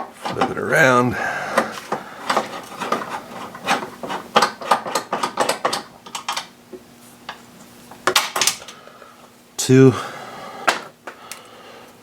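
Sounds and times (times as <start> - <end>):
hand tool clicking and scraping metal: 1.6 - 6.4.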